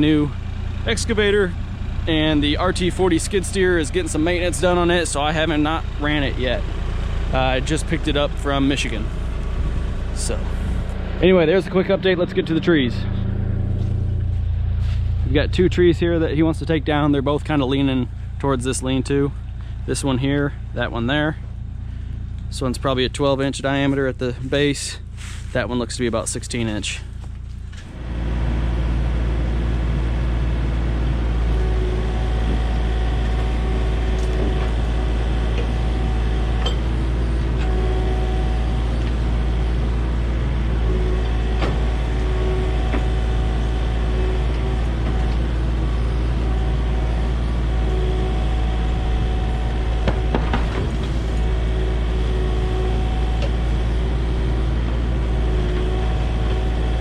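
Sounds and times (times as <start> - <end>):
hydraulic whine: 0.0 - 19.9, 26.7 - 57.0
excavator diesel engine running: 0.0 - 57.0
knocks: 50.0 - 51.1.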